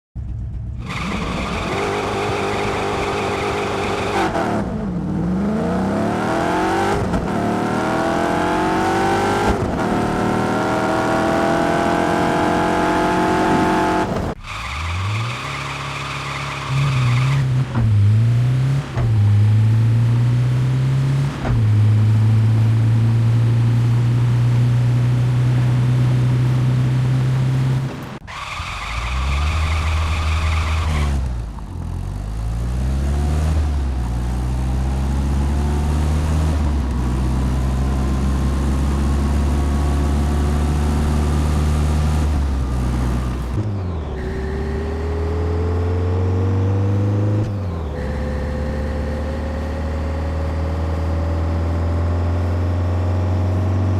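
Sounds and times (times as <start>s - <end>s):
high tyre squeal: 0.8s - 4.4s, 13.6s - 17.7s, 28.2s - 31.3s, 43.8s - 45.3s, 47.6s - 49.7s.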